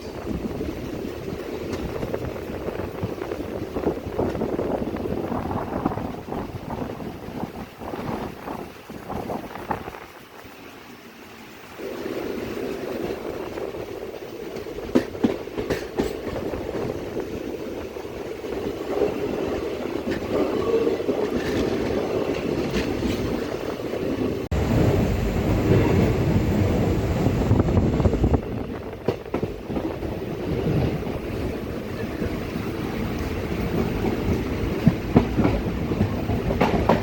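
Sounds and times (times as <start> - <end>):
train rumbling: 0.0 - 37.0
deeper rumble: 24.5 - 28.6.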